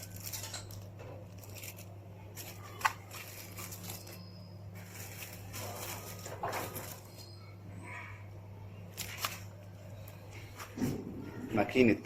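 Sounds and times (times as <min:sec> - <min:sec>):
cellophane packet crinkling: 0:00.0 - 0:07.3, 0:08.8 - 0:10.4
low electrical hum: 0:00.0 - 0:12.0.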